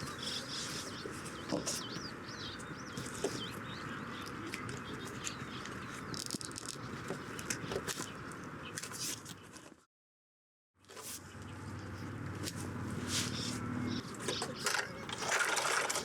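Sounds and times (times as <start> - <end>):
songbird warbling: 0.0 - 6.2, 13.3 - 15.2
outdoor background noise: 0.0 - 9.9, 10.8 - 16.0.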